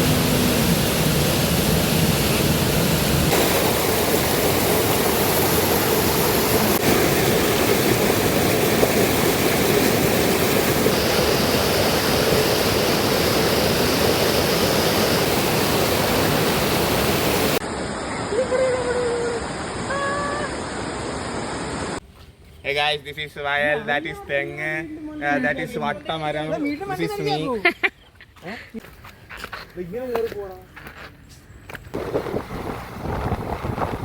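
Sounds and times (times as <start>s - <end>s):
rushing water: 0.0s - 22.0s, 32.0s - 34.0s.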